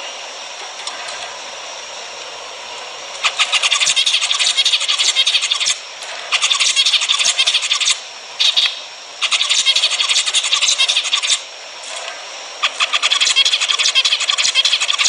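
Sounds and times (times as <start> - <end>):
finch song: 3.2 - 11.4, 12.6 - 15.0.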